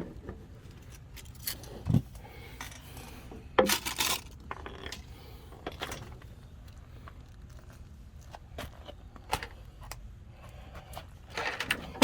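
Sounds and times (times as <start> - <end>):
metal tools clinking and scraping: 0.8 - 5.1.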